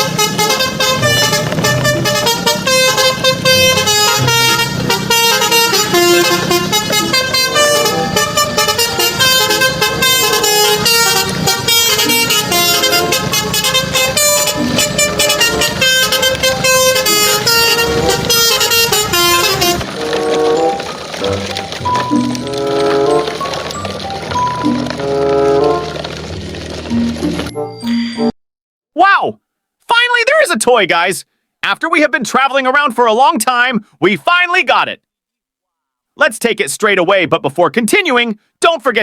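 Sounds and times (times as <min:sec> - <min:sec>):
upbeat background music: 0:00.1 - 0:28.3.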